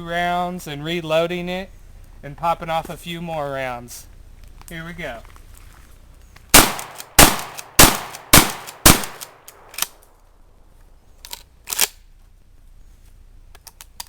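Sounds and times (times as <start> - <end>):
shotgun shots: 6.5 - 10.0.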